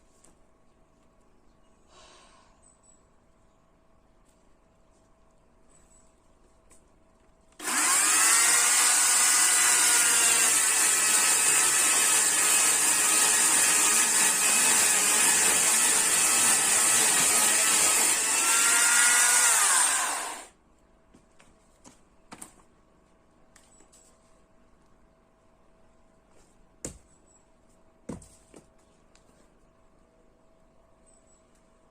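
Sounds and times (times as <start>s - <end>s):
chainsaw running: 7.6s - 20.5s.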